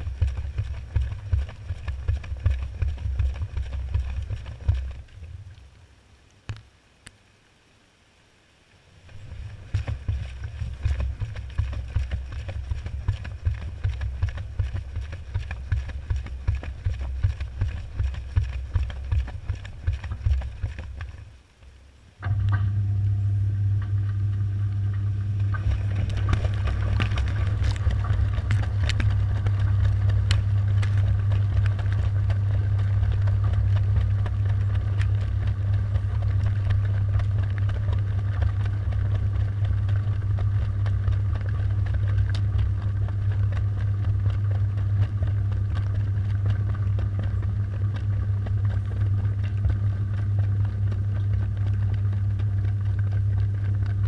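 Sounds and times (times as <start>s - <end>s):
water sloshing in drum: 0.0s - 5.9s, 9.0s - 22.8s, 23.4s - 54.0s
washing machine motor hum: 0.0s - 6.0s, 9.0s - 21.5s, 22.1s - 54.0s
small ticks and clicks: 0.0s - 7.2s, 23.6s - 54.0s.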